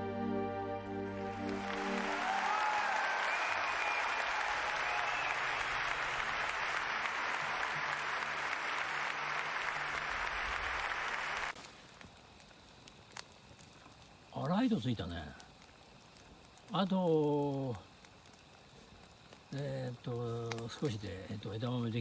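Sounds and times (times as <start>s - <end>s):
wood fire crackling: 1.2s - 22.0s
faint whistling tones: 3.0s - 5.6s.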